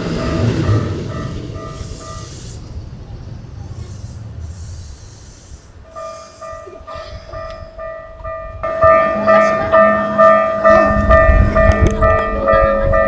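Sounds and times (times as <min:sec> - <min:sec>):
level crossing warning bell: 0:00.0 - 0:03.1, 0:05.8 - 0:13.0.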